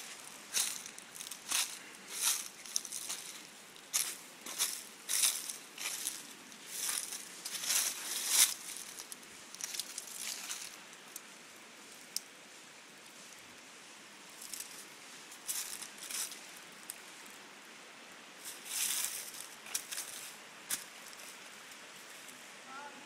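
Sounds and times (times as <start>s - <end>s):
footsteps crunching on trail: 0.0s - 10.8s.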